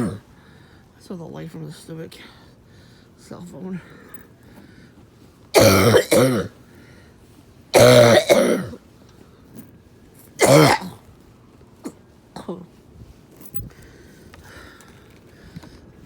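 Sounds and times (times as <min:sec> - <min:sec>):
person coughing hard: 0:00.0 - 0:00.2, 0:05.6 - 0:06.6, 0:07.8 - 0:08.8, 0:10.4 - 0:11.0, 0:12.4 - 0:12.8.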